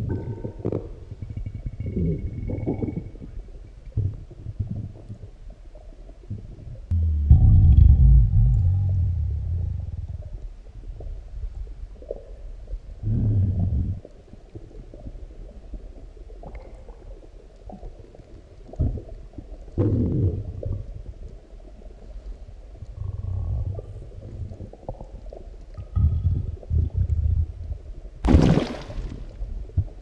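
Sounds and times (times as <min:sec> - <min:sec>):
stomach growls and gurgles: 0:00.0 - 0:30.0.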